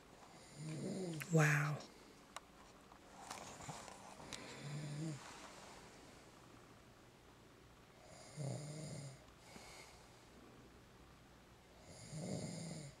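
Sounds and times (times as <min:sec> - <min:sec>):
man snoring: 0:00.4 - 0:01.2, 0:04.6 - 0:05.2, 0:08.0 - 0:09.2, 0:11.8 - 0:13.0
faint breathy sound: 0:04.0 - 0:06.3, 0:08.0 - 0:10.6.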